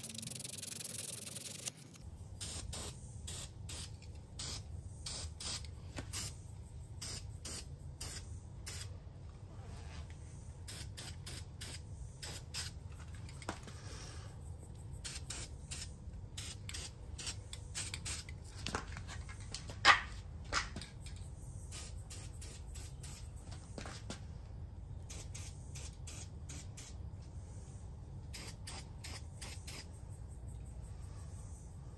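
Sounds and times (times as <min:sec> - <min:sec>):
low steady hum: 0:00.0 - 0:31.9
short hissing spray strokes: 0:02.4 - 0:06.4, 0:07.0 - 0:08.9, 0:10.3 - 0:12.8, 0:15.0 - 0:18.3, 0:21.6 - 0:23.4, 0:25.1 - 0:30.0.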